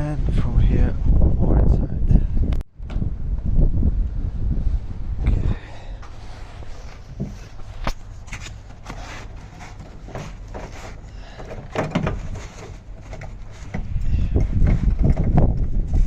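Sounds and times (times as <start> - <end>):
low rumble: 0.0 - 8.8
clicks of door parts being handled: 11.4 - 13.9.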